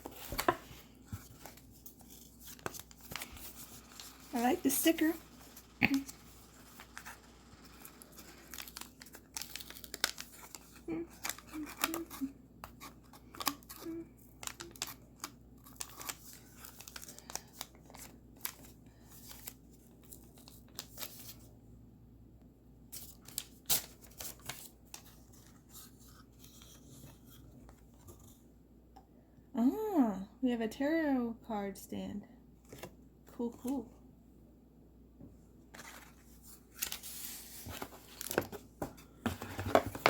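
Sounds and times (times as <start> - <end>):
packaging rustling and tearing: 1.2 - 21.4, 35.8 - 38.7.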